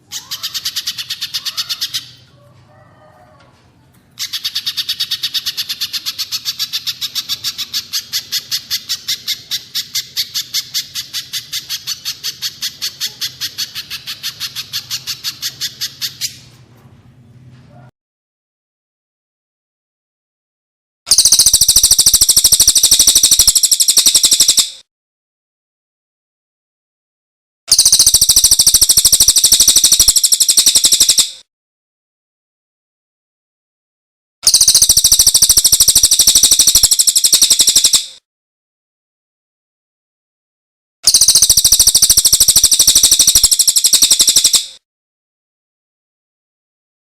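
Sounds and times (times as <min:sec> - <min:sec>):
songbird trill: 0:00.0 - 0:02.6, 0:04.2 - 0:16.4, 0:21.1 - 0:24.8, 0:27.7 - 0:31.4, 0:34.5 - 0:38.2, 0:41.1 - 0:44.8.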